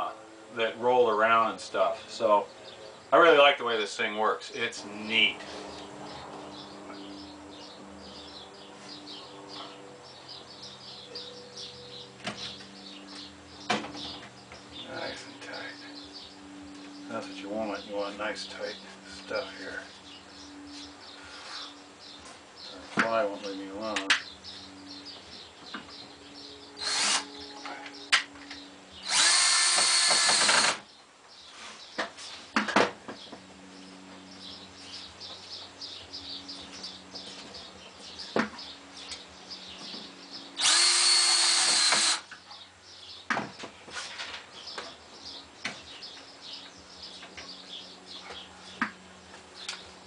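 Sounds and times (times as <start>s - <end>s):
screw gun driving screws into wood: 29.1s - 30.8s, 40.6s - 42.2s.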